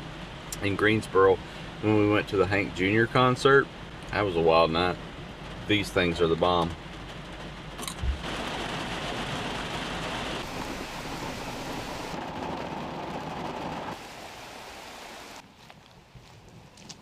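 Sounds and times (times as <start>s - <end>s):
heavy rain: 3.7s - 15.4s.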